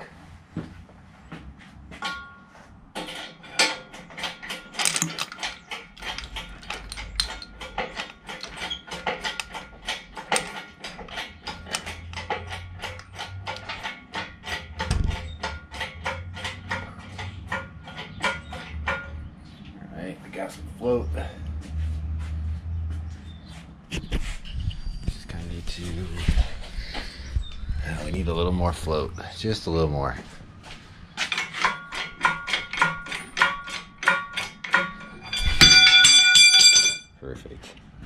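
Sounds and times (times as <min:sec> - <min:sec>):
metal ratchet clicking: 0:03.5 - 0:19.1.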